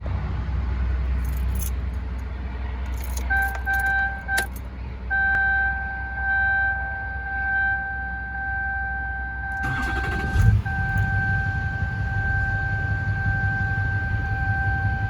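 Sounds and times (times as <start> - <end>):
diesel engine idling: 0.0 - 15.0
light jingling rattles: 1.2 - 2.0, 2.8 - 4.7.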